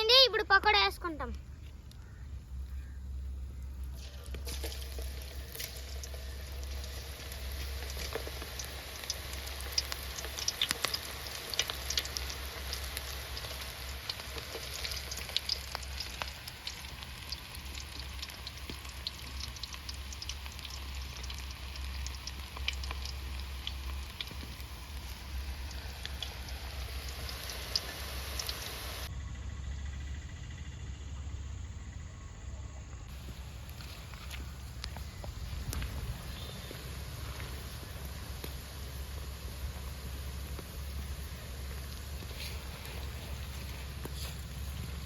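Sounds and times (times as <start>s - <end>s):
food sizzling in hot oil: 4.0s - 29.1s, 35.4s - 45.0s
low hum: 22.2s - 45.0s.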